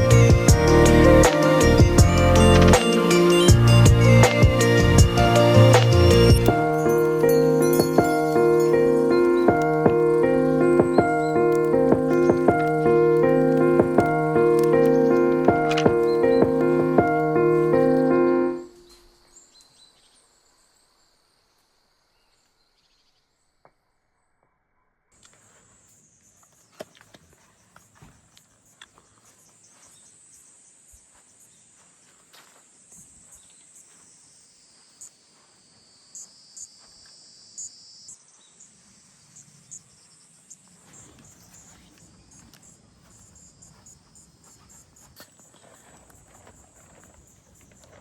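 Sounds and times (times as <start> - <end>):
music: 0.0 - 18.7
crickets chirping: 0.0 - 23.6, 25.2 - 48.0.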